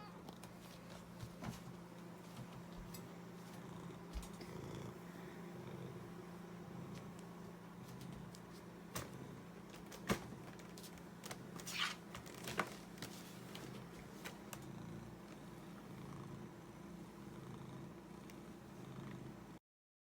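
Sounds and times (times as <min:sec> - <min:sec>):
cat purring: 0:03.4 - 0:08.4, 0:09.0 - 0:09.6, 0:13.4 - 0:19.6.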